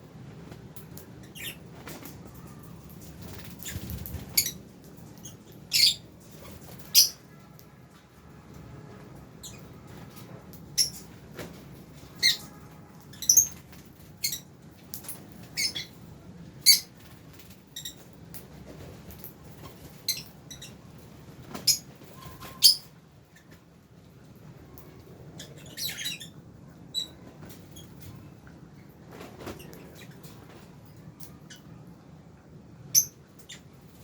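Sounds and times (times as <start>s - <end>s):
birds chirping and squawking: 1.1s - 7.3s, 12.0s - 16.0s, 16.6s - 18.1s, 19.2s - 23.6s, 24.8s - 28.1s, 32.9s - 33.7s.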